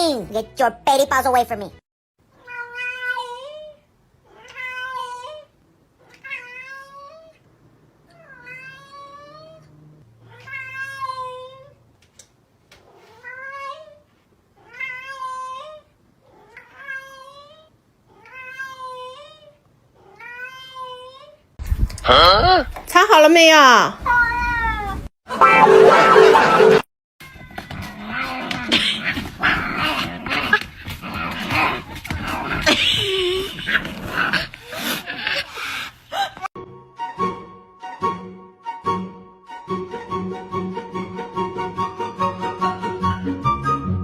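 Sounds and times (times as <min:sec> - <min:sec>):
cat meowing: 0:02.4 - 0:07.4, 0:08.1 - 0:11.8, 0:14.6 - 0:21.4, 0:24.0 - 0:25.1.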